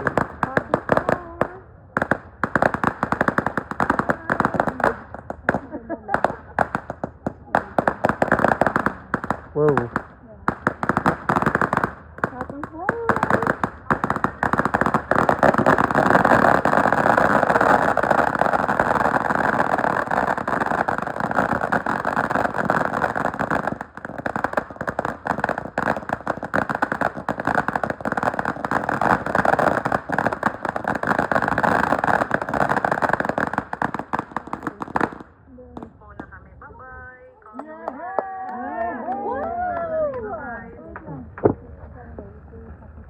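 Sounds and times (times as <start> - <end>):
fireworks crackling: 0.0 - 40.5.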